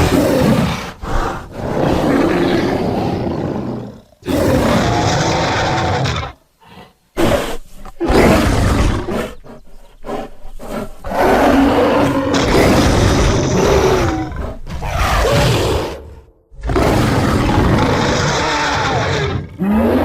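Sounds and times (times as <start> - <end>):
creature snarl: 10.1 - 20.0.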